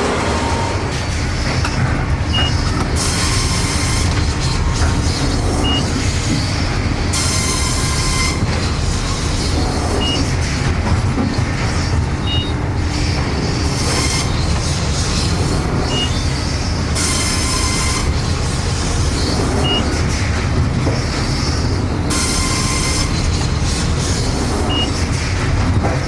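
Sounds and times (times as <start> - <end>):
sawmill carriage rolling on rails: 0.0 - 26.0
short high beeps: 12.3 - 12.6.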